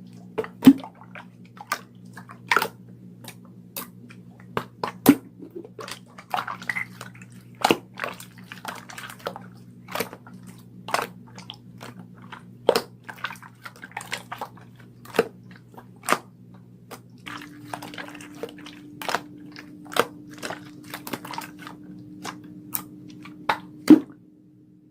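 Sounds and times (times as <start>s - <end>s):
slime squishing with sticky clicks: 16.9s - 24.1s.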